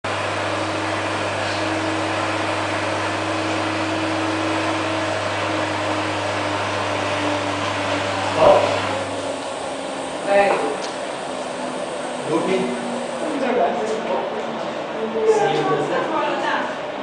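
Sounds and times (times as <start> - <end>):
welding equipment hum and hiss: 0.1 - 13.6.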